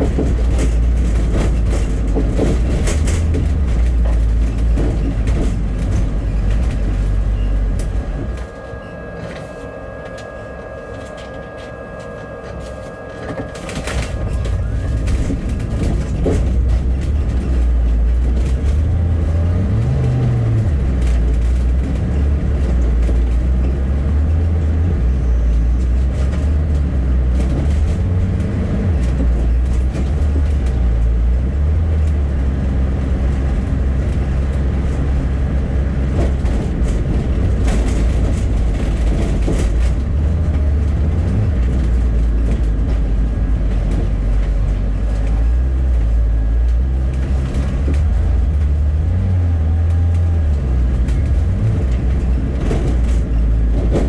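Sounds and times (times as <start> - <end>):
bus engine and road rumble: 0.0 - 54.0
steady high tone: 7.4 - 16.0.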